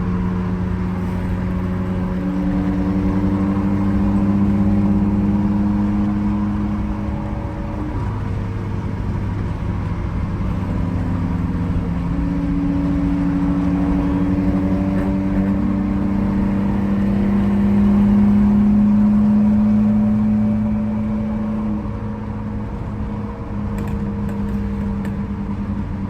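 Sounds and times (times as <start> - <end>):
car engine running: 0.0 - 26.0.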